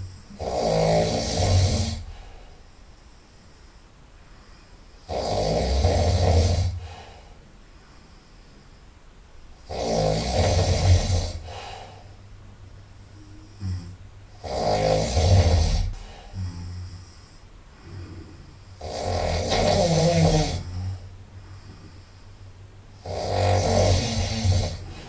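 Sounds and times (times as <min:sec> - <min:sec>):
loud nasal snoring: 0:00.0 - 0:02.5, 0:05.0 - 0:07.3, 0:09.6 - 0:12.2, 0:13.2 - 0:22.1, 0:23.0 - 0:25.0.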